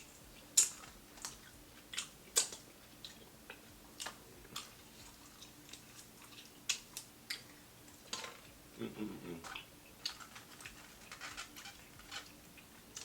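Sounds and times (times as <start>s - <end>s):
chewing crispy fried food: 0.0s - 8.6s, 9.3s - 13.0s.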